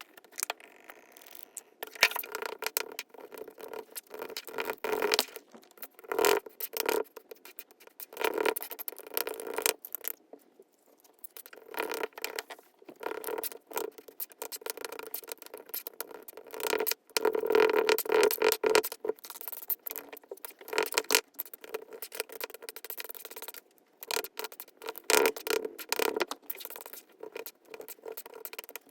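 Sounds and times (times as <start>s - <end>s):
rustling and scraping: 0.0s - 8.8s, 10.4s - 13.5s
small objects being handled: 0.0s - 16.1s.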